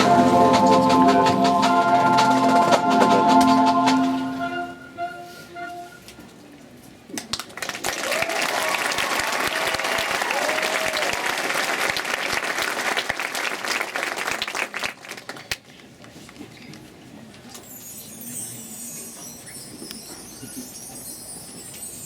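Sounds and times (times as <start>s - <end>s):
audience applauding: 7.5s - 15.4s
people cheering: 8.0s - 11.4s.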